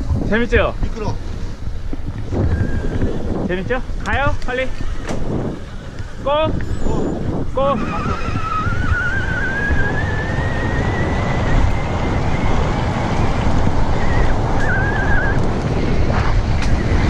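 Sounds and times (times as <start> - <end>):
bike tyres rumbling on dirt: 0.0 - 17.0
wind buffeting microphone: 0.0 - 17.0
high wavering squeal: 2.4 - 3.2, 6.4 - 13.1, 13.8 - 15.5.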